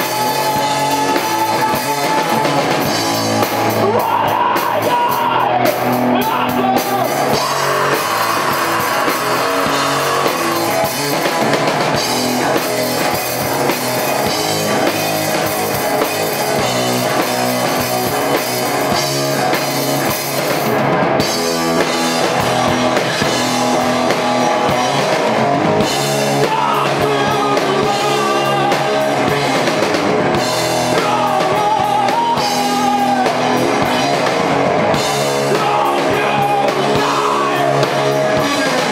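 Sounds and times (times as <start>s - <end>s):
person singing: 0.0s - 3.0s, 3.7s - 11.5s, 26.2s - 29.7s, 30.7s - 34.2s, 34.9s - 38.9s
drum kit: 0.0s - 38.9s
electric guitar: 0.0s - 38.9s.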